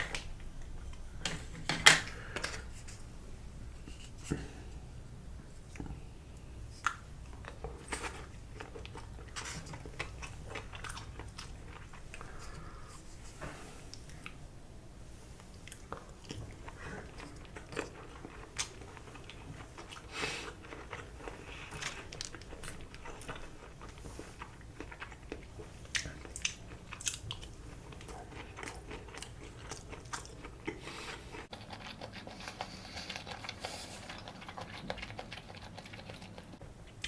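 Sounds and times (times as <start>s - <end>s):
person chewing food: 6.8s - 13.1s, 15.6s - 37.0s.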